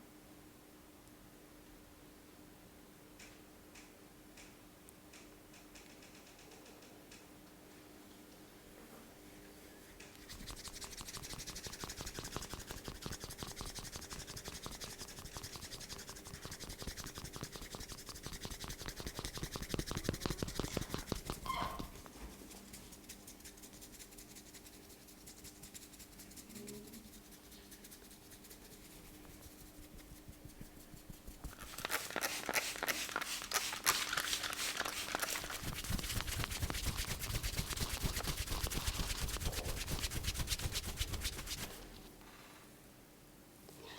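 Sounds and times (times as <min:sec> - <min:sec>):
hands rubbing in massage: 0:10.0 - 0:42.1.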